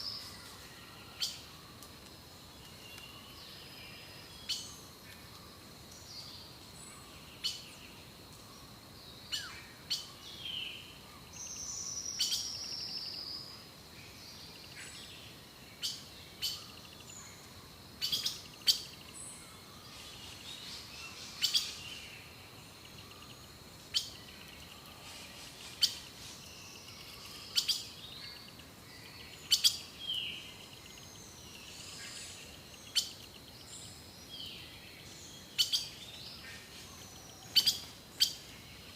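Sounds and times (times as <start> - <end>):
light hiss: 0.0 - 38.9.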